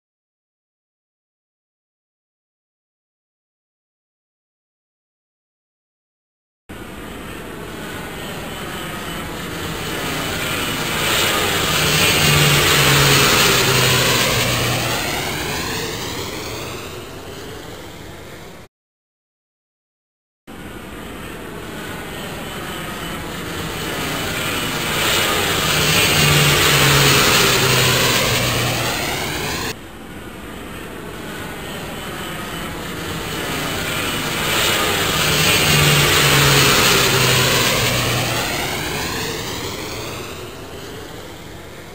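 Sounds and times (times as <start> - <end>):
jet aircraft passing overhead: 6.7 - 18.7, 20.5 - 41.9.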